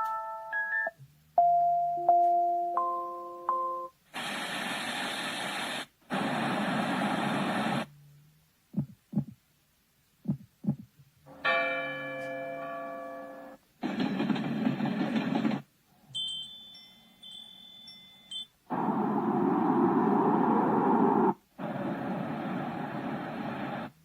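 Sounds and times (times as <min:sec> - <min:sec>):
white noise hiss: 0:03.2 - 0:11.4, 0:18.1 - 0:24.0
soft low thumps: 0:08.7 - 0:09.4, 0:10.2 - 0:11.1
ringing bell tone: 0:11.4 - 0:13.6, 0:16.1 - 0:18.7
chime notes: 0:16.1 - 0:18.6.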